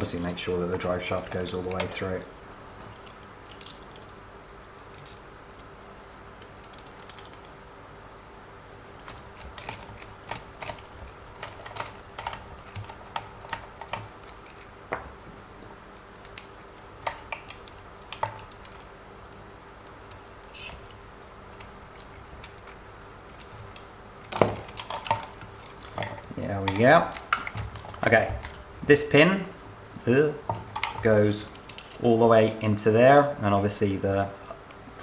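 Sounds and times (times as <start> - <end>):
faint steady hum: 0.0 - 35.0
plastic parts clicking: 9.0 - 14.7, 20.1 - 28.6.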